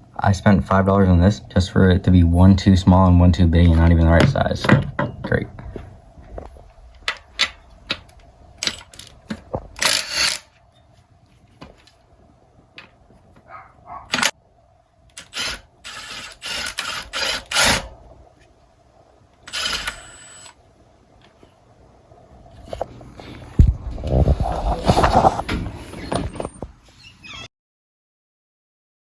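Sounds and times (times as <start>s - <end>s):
sharp clicks and knocks: 14.1s - 14.3s
scraping and rustling: 22.6s - 27.0s.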